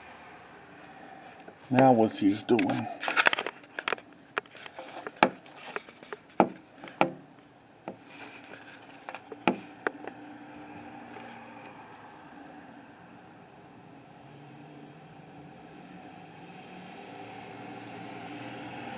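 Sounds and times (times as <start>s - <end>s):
faint steady background noise: 0.0s - 18.9s
camera handling noise: 2.6s - 6.4s.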